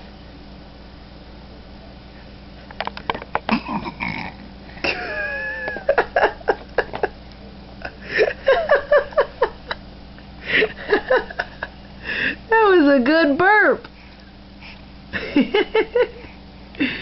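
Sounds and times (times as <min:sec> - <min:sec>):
baby burping: 0:03.5 - 0:04.4.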